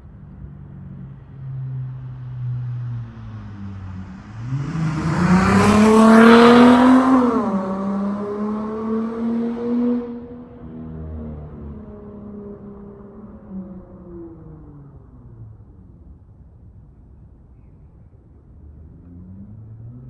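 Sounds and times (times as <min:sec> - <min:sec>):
car exhaust accelerating past: 0:00.7 - 0:16.0.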